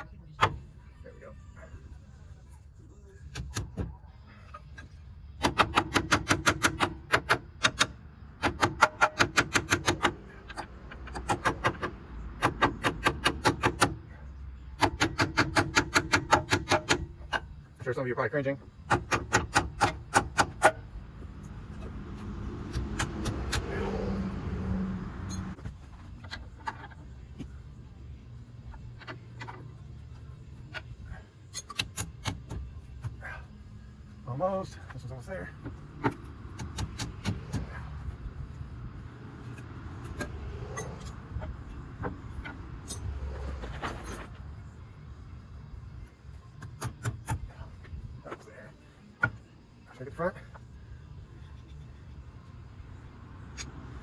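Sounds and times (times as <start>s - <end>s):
metallic tool clicks and knocks: 5.4s - 14.0s, 14.8s - 17.5s, 31.5s - 33.1s.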